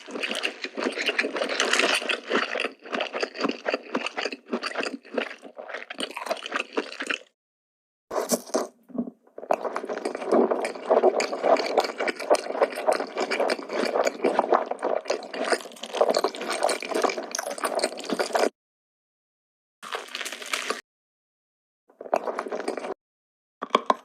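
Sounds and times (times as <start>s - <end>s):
wet chewing and smacking: 0.0s - 7.4s, 8.3s - 18.5s, 22.0s - 23.0s.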